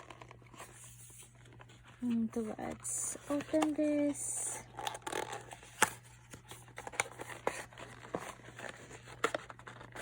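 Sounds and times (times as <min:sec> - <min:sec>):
packaging clicks and rustles: 0:00.0 - 0:10.0.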